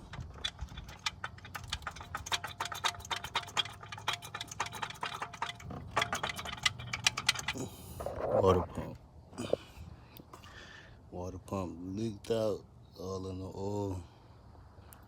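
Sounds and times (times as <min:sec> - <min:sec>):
car engine running with ticking: 0:00.0 - 0:08.2.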